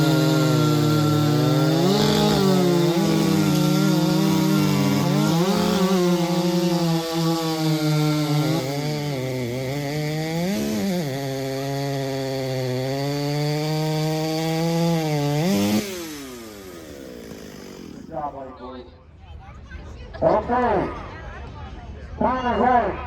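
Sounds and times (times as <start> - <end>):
chainsaw cutting log: 0.0 - 18.4.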